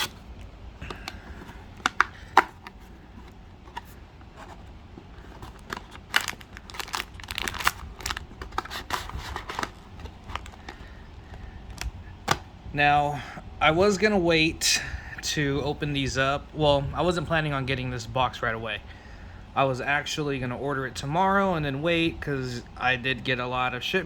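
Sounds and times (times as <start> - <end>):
wrapping tearing and crinkling: 0.0 - 3.1, 3.8 - 11.0.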